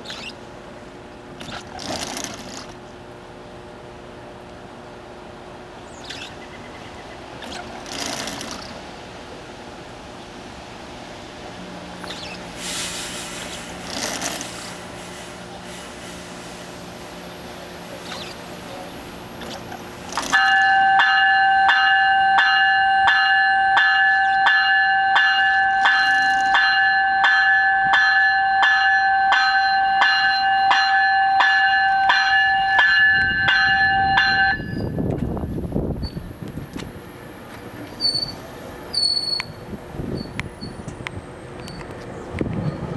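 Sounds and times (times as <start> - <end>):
low rumble of train: 2.8 - 7.5, 8.7 - 42.9
train bell ringing: 20.3 - 35.0.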